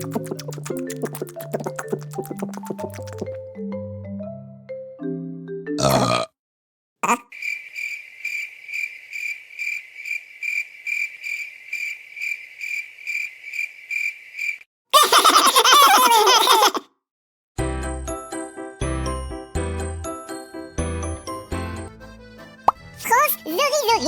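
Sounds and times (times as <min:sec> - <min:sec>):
cartoon cricket chirping: 0:07.2 - 0:14.6
cartoon voice laughing: 0:15.0 - 0:16.9, 0:23.0 - 0:24.0.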